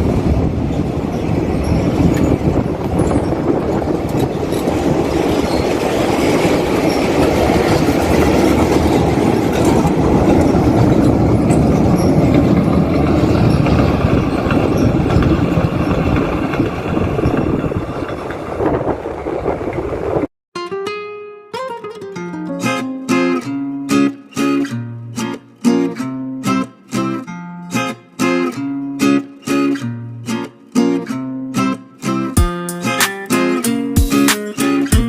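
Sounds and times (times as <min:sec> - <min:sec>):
train rumbling past: 0:00.0 - 0:20.3
wheels clicking over rail joints: 0:00.3 - 0:20.3.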